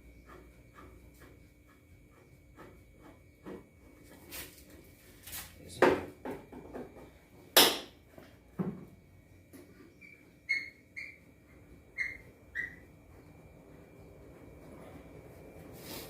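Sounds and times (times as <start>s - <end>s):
short high squeaks: 9.9s - 11.3s, 11.9s - 12.9s.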